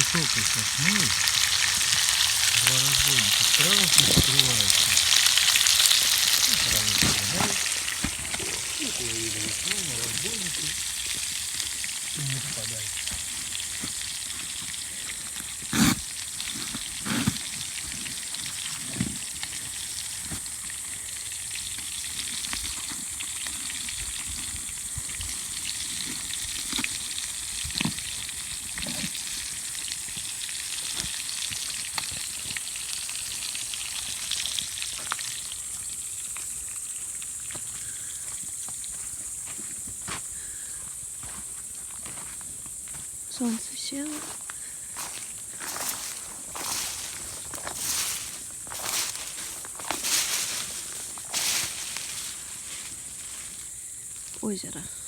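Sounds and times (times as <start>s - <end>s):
fish sizzling in a pan: 0.0s - 55.0s.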